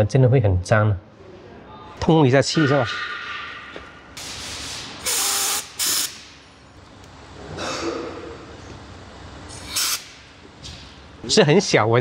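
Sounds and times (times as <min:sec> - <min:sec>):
air hissing through nozzle: 0:04.2 - 0:06.3, 0:09.6 - 0:10.2.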